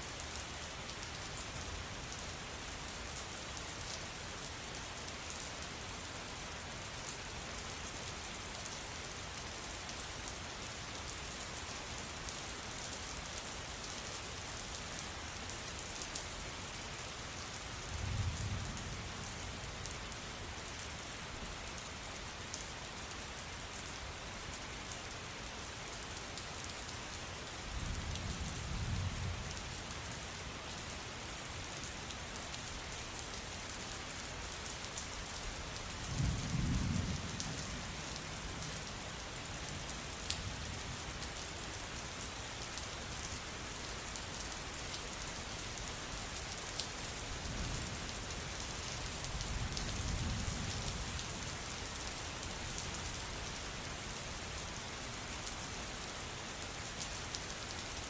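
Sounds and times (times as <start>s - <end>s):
steady rain: 0.0s - 58.0s.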